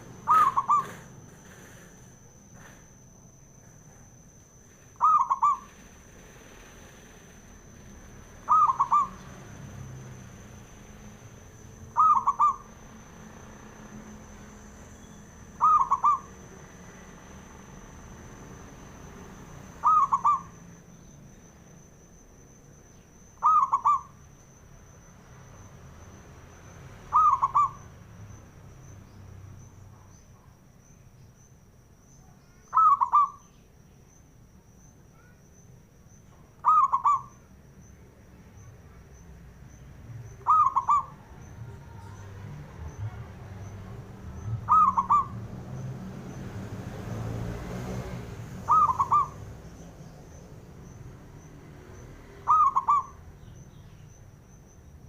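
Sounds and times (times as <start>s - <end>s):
dove cooing: 0.0s - 1.9s, 5.0s - 6.6s, 8.3s - 9.6s, 11.6s - 12.9s, 15.5s - 16.6s, 19.7s - 20.6s, 23.4s - 24.2s, 27.1s - 27.9s, 32.7s - 33.4s, 36.6s - 37.3s, 40.3s - 45.7s, 48.2s - 49.6s, 52.4s - 53.2s
faint high whine: 0.0s - 55.0s.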